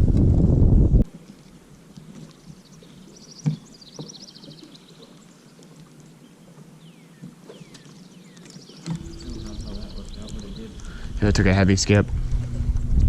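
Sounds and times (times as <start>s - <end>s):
bird trilling: 8.7s - 11.1s.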